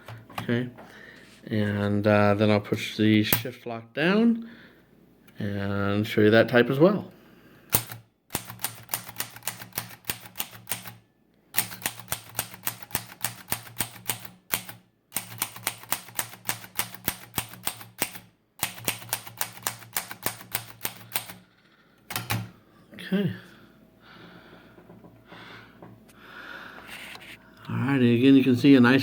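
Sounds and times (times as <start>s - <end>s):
typewriter key strikes: 7.7s - 11.0s, 11.6s - 21.4s, 22.1s - 22.5s.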